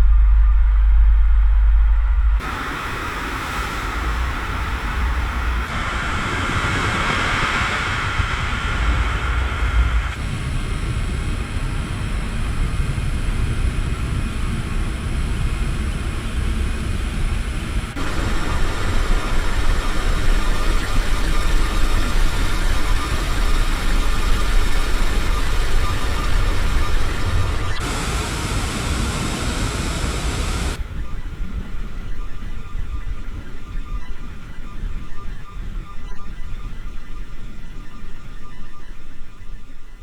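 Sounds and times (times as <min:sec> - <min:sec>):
traffic hiss: 0:02.4 - 0:30.8
low traffic rumble: 0:25.4 - 0:30.8.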